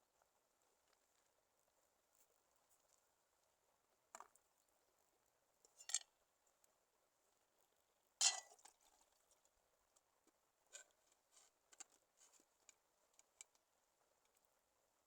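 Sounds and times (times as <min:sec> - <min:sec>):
cookware clinking: 0:08.2 - 0:08.5.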